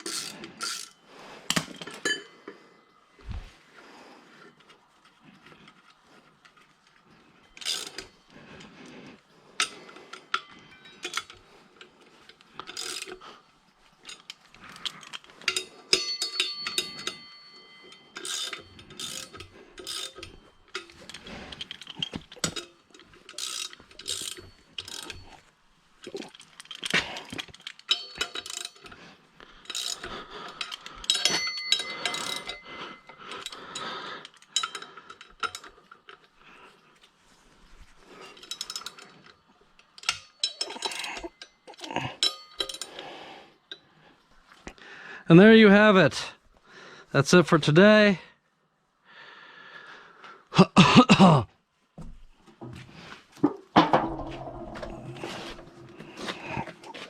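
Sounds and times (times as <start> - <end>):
metal part ringing: 0.0 - 2.5, 15.5 - 25.4, 27.8 - 28.8, 31.0 - 33.2, 39.8 - 43.0, 53.8 - 56.9
clanks and clinks of steel tools: 0.0 - 3.4, 4.4 - 37.0, 37.7 - 44.8, 52.5 - 57.0.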